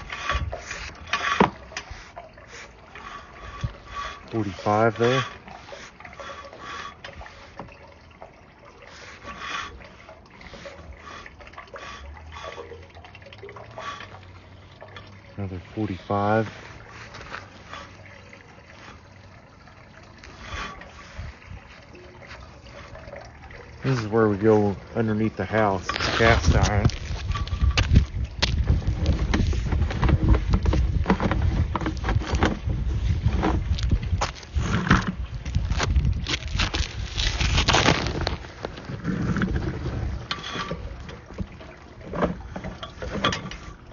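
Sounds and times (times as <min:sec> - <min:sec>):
knocks and clicks in pipe: 0:00.0 - 0:08.4, 0:25.8 - 0:35.2, 0:40.2 - 0:43.9
cable rumbling in drain pipe: 0:00.0 - 0:43.9
water trickling and dripping: 0:00.0 - 0:43.9.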